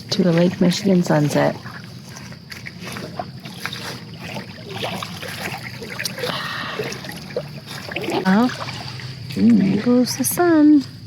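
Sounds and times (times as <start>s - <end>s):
lake water washing: 0.0s - 11.0s
wind: 0.0s - 11.0s.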